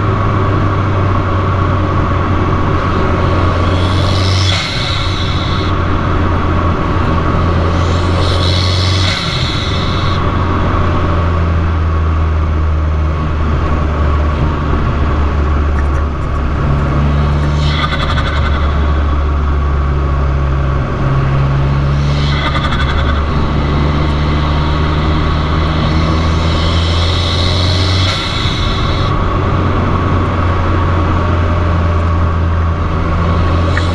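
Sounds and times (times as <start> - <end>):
car exhaust drone: 0.0 - 33.9
brief hiss: 2.8 - 10.4, 21.7 - 29.2.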